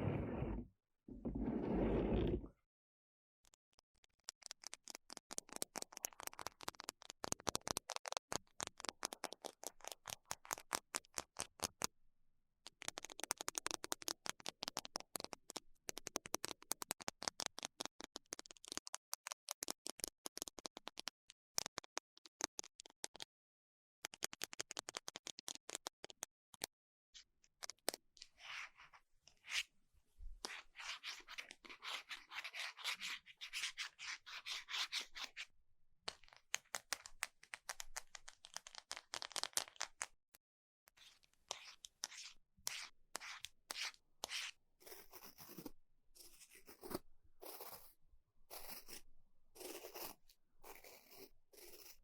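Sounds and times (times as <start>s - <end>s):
scratchy rubbing: 0.0s - 2.4s, 30.4s - 35.5s, 41.0s - 49.0s, 49.6s - 52.0s.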